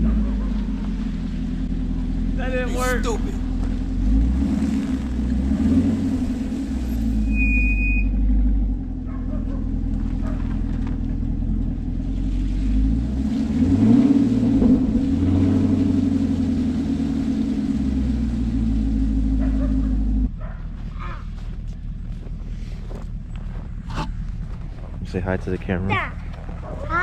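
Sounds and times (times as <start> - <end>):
car engine revving: 0.0 - 20.4.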